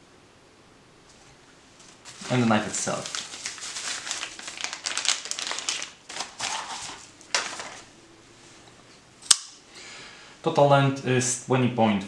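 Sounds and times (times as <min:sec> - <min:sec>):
wrapping crinkling and rustling: 0:01.1 - 0:07.9.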